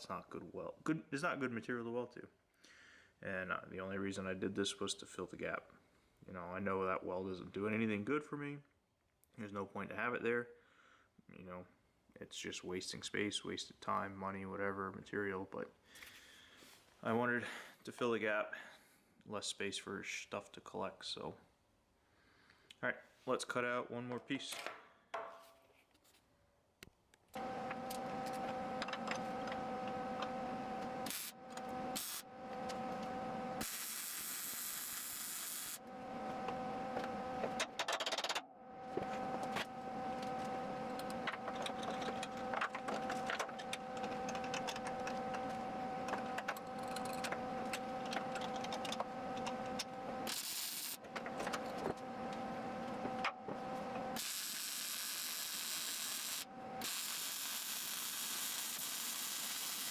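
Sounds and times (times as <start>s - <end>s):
power tool cutting steel: 31.0s - 35.9s, 49.4s - 51.1s, 54.2s - 59.9s.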